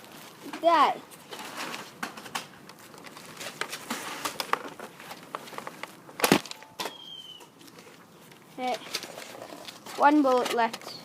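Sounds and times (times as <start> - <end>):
small clicks and rustling: 0.1 - 6.7, 7.4 - 11.0
loud sharp crack: 6.2 - 7.0.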